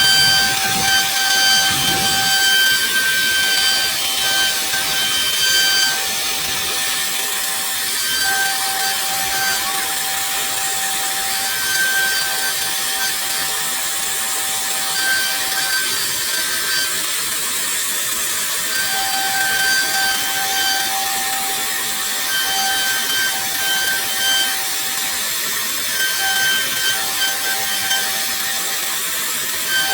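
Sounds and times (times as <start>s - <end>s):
router spindle hissing: 0.0s - 6.4s
thin spindle whine: 0.0s - 29.9s.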